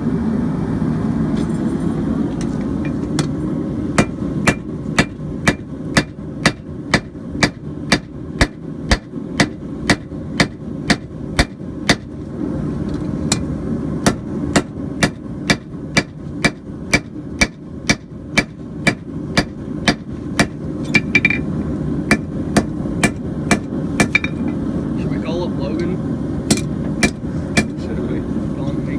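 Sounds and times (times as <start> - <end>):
hammer striking steel on anvil: 4.0 - 12.1, 13.3 - 21.5, 22.1 - 24.6, 26.5 - 27.8.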